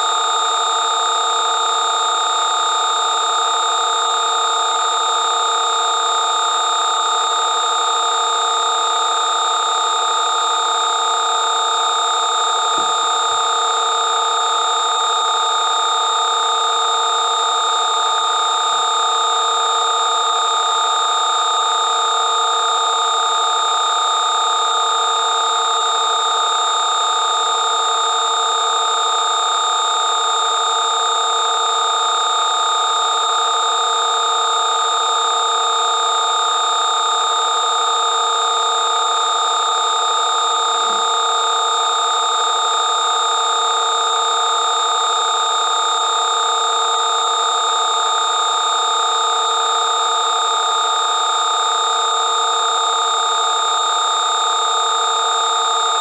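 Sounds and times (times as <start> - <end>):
electronic drone of held tones: 20.2 - 49.2.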